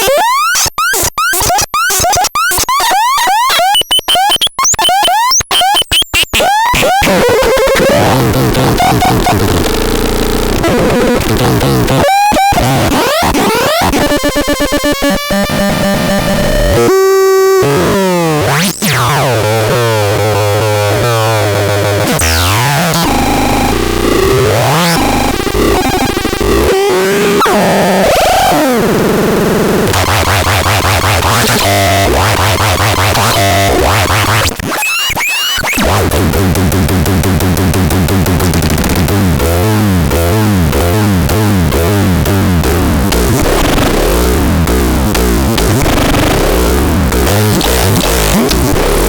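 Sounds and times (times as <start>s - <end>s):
harsh glitchy synthesizer tones: 0.0s - 49.0s.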